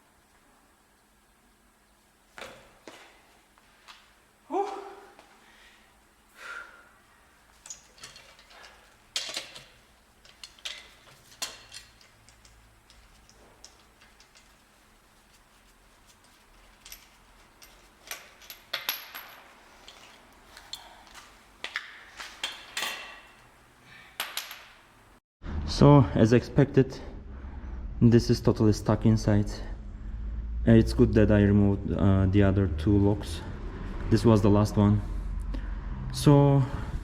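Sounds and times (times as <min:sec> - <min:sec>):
metal tools clinking and tapping: 0:07.5 - 0:24.9.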